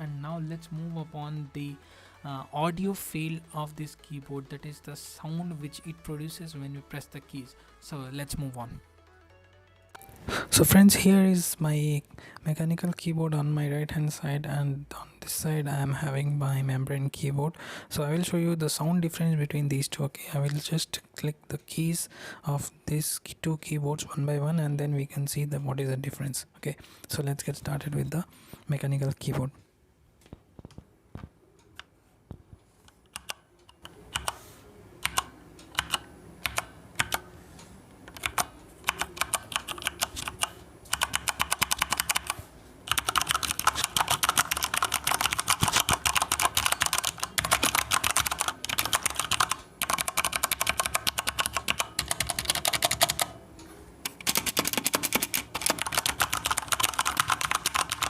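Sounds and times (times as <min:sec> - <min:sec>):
rapid typing: 0:35.0 - 0:37.3, 0:38.1 - 0:53.3, 0:54.0 - 0:58.0
mechanical keyboard key clicks: 0:54.0 - 0:58.0.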